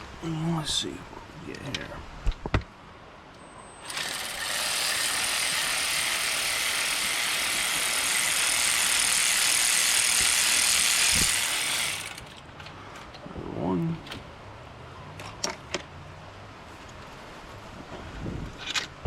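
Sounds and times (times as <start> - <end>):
electric ratchet spinning bolt: 3.8 - 12.3.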